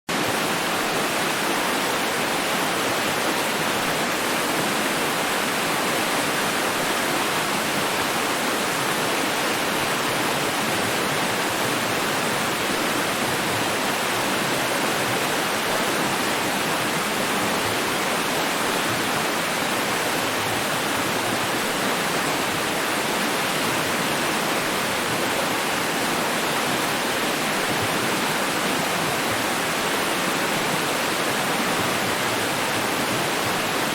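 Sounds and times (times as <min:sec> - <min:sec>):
running water rushing: 0:00.1 - 0:33.9.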